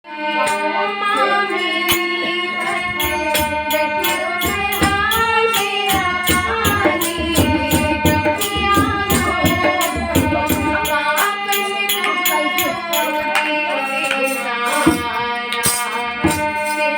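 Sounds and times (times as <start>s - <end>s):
devotional singing: 0.1s - 16.9s
steady percussion beat: 1.9s - 16.8s.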